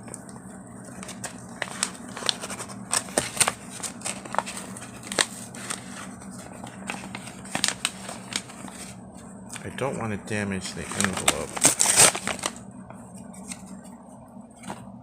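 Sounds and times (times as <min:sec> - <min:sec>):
paper envelope crinkling: 0:00.1 - 0:09.0, 0:10.6 - 0:13.9.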